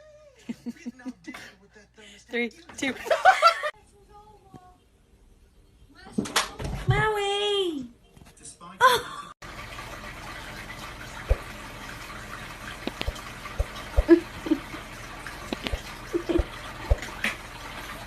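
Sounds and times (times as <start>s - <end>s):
rushing water: 9.4s - 18.0s.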